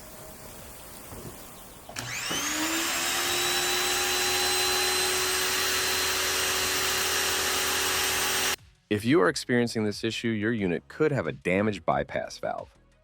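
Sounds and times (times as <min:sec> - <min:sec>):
pressure washer motor whine: 0:01.9 - 0:08.6.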